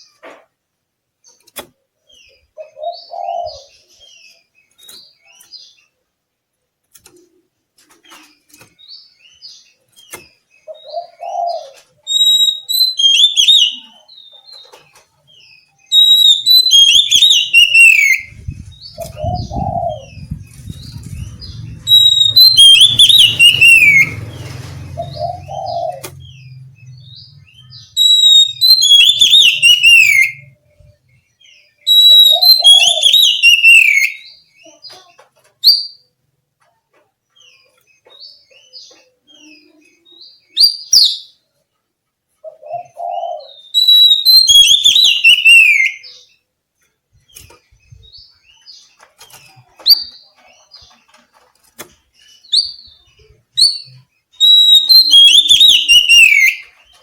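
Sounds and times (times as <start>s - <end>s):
bird singing whistled phrases: 12.1s - 13.9s, 15.9s - 20.4s, 21.1s - 24.2s, 25.1s - 30.6s, 31.8s - 34.4s, 43.5s - 46.2s, 53.6s - 56.7s
soft bird twittering: 15.7s - 34.8s
low rumble: 18.3s - 28.7s.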